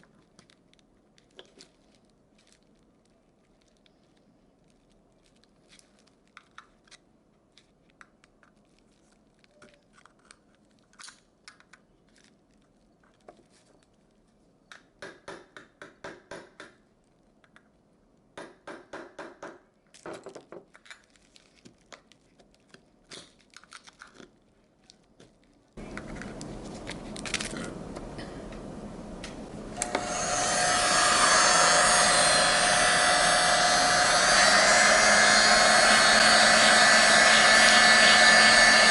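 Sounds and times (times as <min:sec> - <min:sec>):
steady machine noise: 0:29.5 - 0:38.9.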